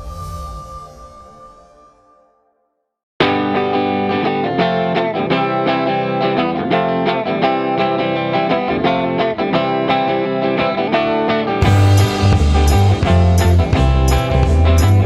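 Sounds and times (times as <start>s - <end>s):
distorted electric guitar strumming: 3.2s - 15.0s
steady beat: 11.6s - 15.0s.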